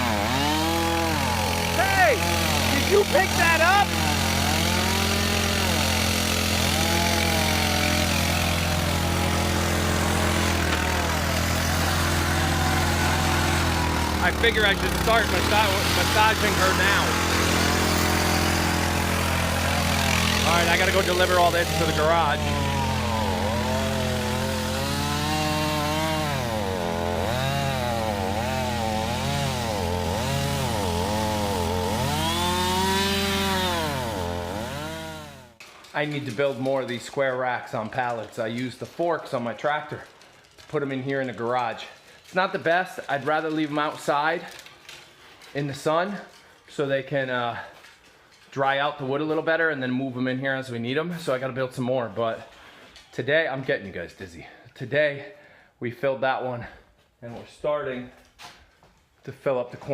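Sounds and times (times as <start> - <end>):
small gasoline engine revving: 0.0 - 35.6.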